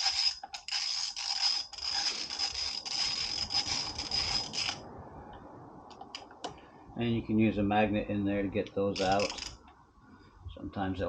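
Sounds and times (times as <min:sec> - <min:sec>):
power tool whirring: 0:00.0 - 0:04.8, 0:09.0 - 0:09.5.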